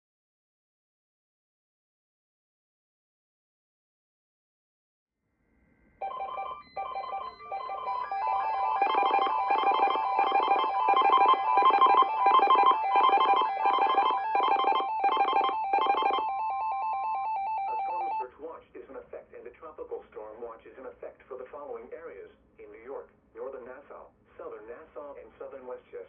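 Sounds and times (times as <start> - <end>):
electronic alert tones beeping: 6.0 - 18.2.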